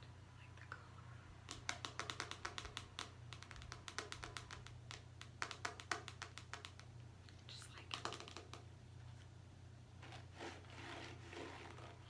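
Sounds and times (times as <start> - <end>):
faint low hum: 0.0 - 12.0
sharp tapping clicks: 1.5 - 6.9.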